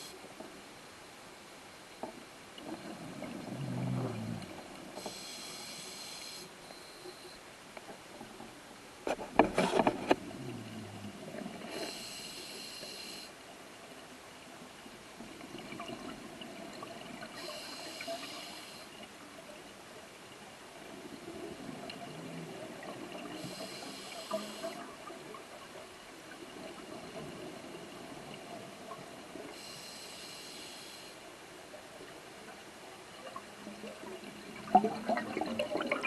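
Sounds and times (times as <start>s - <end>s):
bubbling exhaled air: 3.1s - 4.7s
regulator inhalation hiss: 5.0s - 7.4s, 11.7s - 13.4s, 17.4s - 19.0s, 23.4s - 24.8s, 29.6s - 31.2s.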